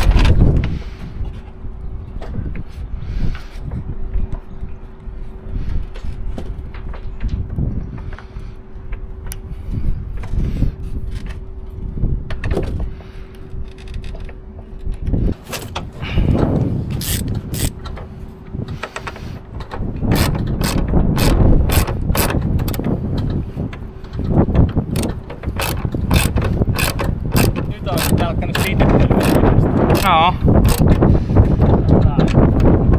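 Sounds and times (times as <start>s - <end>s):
ratchet clicking: 16.9s - 17.9s, 20.0s - 22.9s, 24.9s - 31.0s
tools knocking and clanking on metal: 18.7s - 31.0s.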